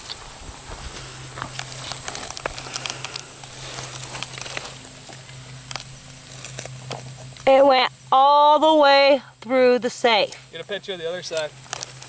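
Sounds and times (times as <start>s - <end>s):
footsteps on dry ground: 0.0s - 7.4s, 10.4s - 12.0s
steady low hum: 0.0s - 12.0s.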